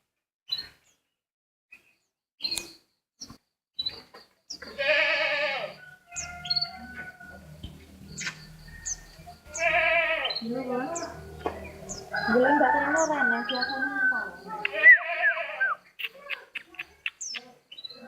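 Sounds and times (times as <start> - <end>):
bird chirps: 0.5 - 1.1, 1.8 - 5.0, 5.6 - 18.0
bird wavering bleat-like cry: 4.6 - 5.8, 9.5 - 11.2, 14.6 - 15.8.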